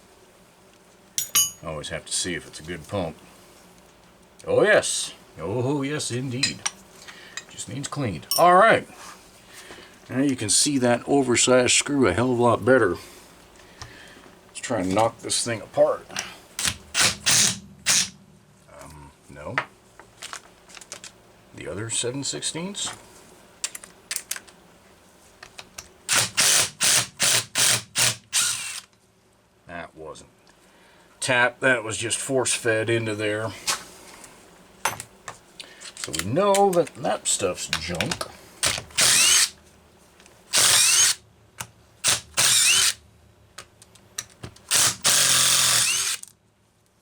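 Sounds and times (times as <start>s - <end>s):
power driver motor whine: 28.0s - 28.8s, 38.9s - 39.5s, 40.5s - 41.2s, 42.0s - 43.0s, 44.7s - 46.2s.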